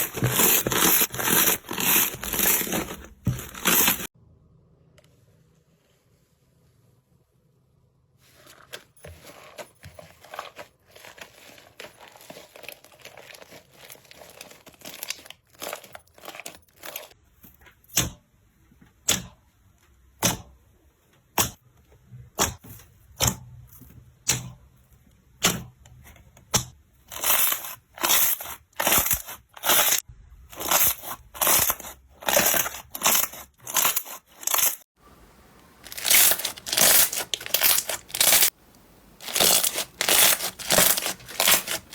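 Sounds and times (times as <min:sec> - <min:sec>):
slime crackling and popping: 0:35.9 - 0:38.5.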